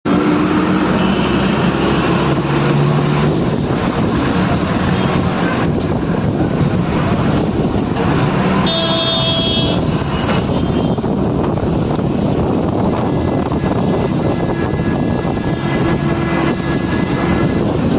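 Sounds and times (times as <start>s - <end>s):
passing vehicles and engines: 0.0s - 17.9s
vehicle horn: 8.6s - 11.0s.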